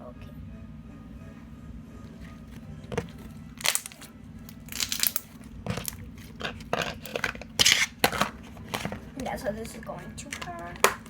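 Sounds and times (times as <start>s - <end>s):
steady low hum: 0.0s - 11.0s
plastic packaging crinkling: 2.3s - 11.0s.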